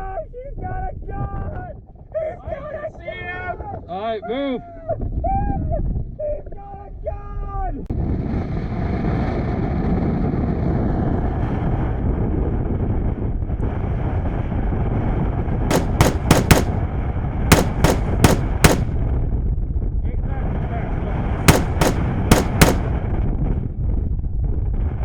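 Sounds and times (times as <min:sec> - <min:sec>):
airsoft rifle shots: 0:15.7 - 0:16.9, 0:17.5 - 0:19.1, 0:21.5 - 0:23.2.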